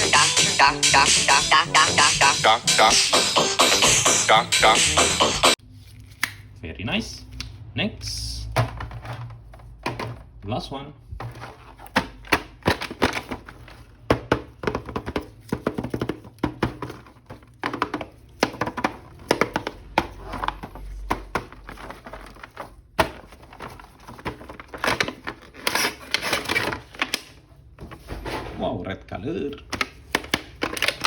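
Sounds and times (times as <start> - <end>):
hard plastic clicks and crinkles: 11.2 - 27.5, 29.5 - 31.0.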